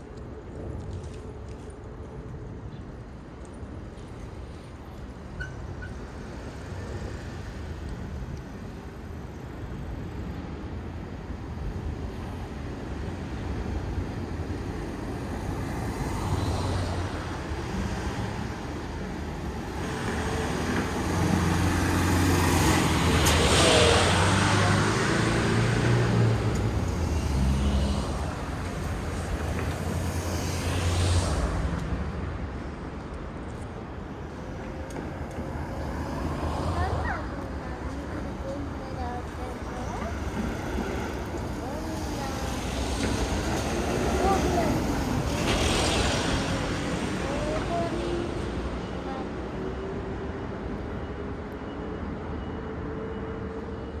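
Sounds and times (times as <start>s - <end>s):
motor vehicles passing: 19.9s - 32.1s.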